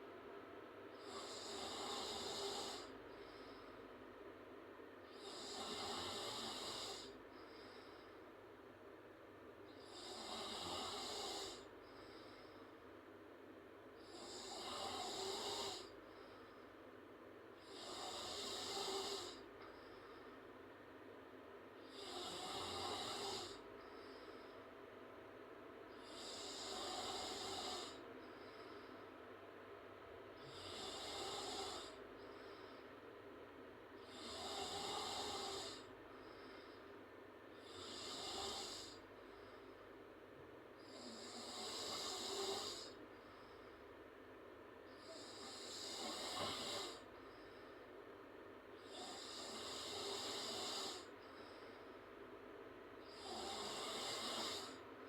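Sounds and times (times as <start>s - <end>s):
woman snoring loudly: 1.0s - 2.9s, 5.2s - 7.1s, 9.9s - 11.6s, 14.1s - 15.9s, 17.6s - 19.4s, 21.9s - 23.6s, 26.0s - 28.0s, 30.4s - 32.0s, 34.0s - 35.9s, 37.6s - 39.0s, 40.9s - 43.0s, 45.0s - 47.0s, 48.8s - 51.1s, 53.1s - 54.8s
faint short breath: 36.1s - 37.0s.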